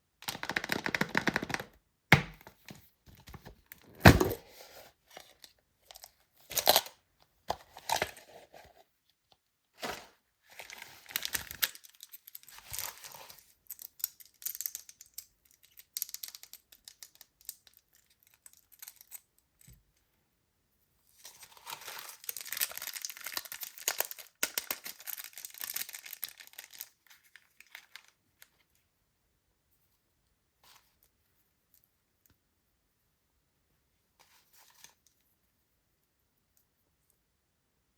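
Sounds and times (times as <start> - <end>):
packaging torn and crinkled: 10.5 - 13.8, 21.2 - 28.1.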